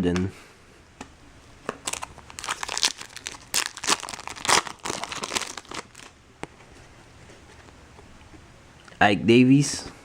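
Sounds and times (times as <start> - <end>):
foil wrapper crinkling and tearing: 1.8 - 6.2.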